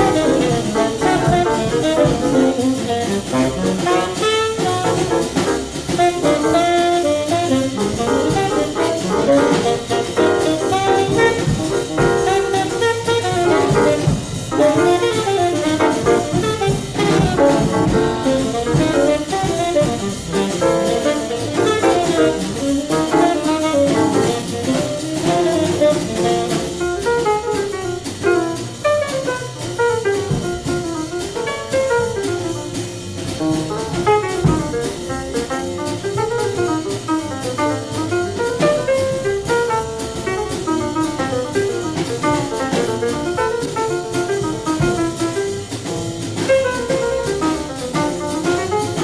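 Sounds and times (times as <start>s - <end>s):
tenor saxophone: 0.0s - 32.7s
double bass: 0.0s - 49.0s
drums: 0.0s - 49.0s.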